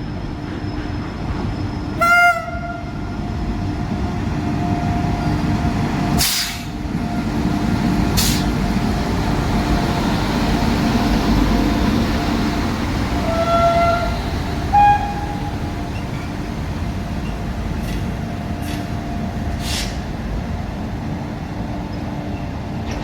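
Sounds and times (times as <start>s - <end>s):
train rumbling: 0.0s - 23.0s
train horn toots: 2.0s - 3.2s, 13.2s - 15.6s.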